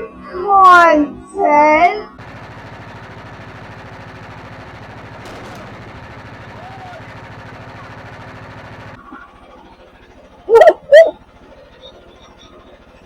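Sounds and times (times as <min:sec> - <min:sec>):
sawmill engine idling: 0:02.2 - 0:10.4.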